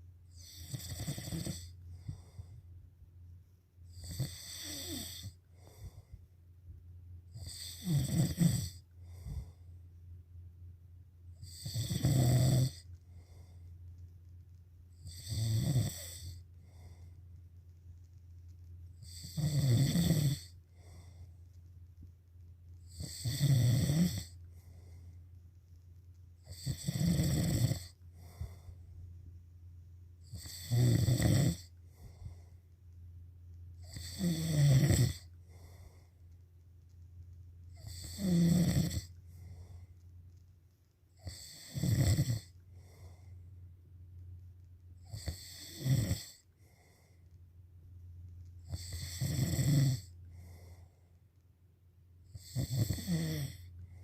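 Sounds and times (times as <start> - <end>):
steady low hum: 0.0 - 54.0
person snoring loudly: 0.3 - 1.7, 3.9 - 5.4, 7.4 - 8.8, 11.4 - 12.8, 15.0 - 16.4, 19.0 - 20.5, 22.9 - 24.3, 26.5 - 28.4, 30.3 - 31.7, 33.8 - 35.3, 37.8 - 39.1, 41.2 - 42.5, 45.1 - 46.4, 48.7 - 50.1, 52.3 - 53.7
soft breathing: 1.6 - 6.5, 8.7 - 10.2, 12.7 - 15.2, 15.9 - 19.4, 20.4 - 23.0, 24.2 - 26.7, 27.8 - 30.4, 31.6 - 33.0, 35.1 - 38.2, 38.9 - 41.6, 42.3 - 43.9, 46.3 - 47.6, 50.0 - 51.4, 53.5 - 54.0.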